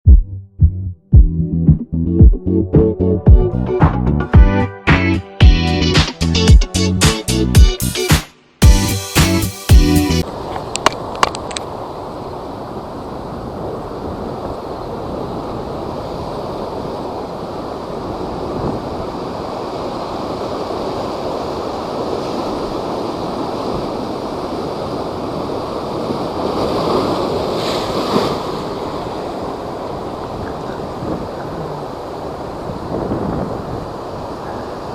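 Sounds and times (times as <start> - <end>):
waves crashing: 9.1 - 34.9
wind: 10.2 - 34.9.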